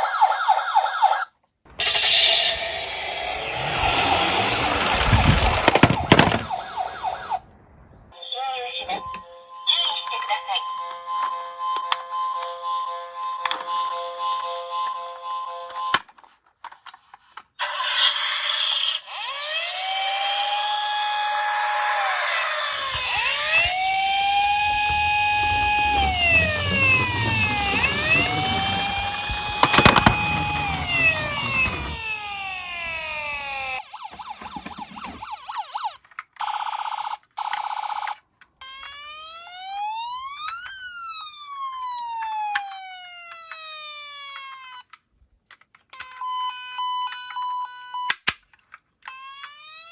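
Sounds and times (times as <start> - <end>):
emergency vehicle sirens wailing: 0.0 - 7.6, 19.1 - 36.1, 38.6 - 44.8
sharp clatter: 1.7 - 6.7, 22.9 - 33.6
low rolling rumble: 1.7 - 8.2, 22.8 - 33.6.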